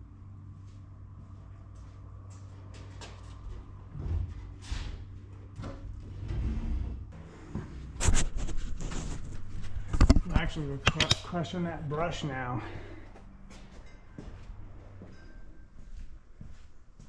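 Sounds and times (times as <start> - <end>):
low steady hum: 0.0 - 17.0
objects knocking and scraping: 8.0 - 11.3.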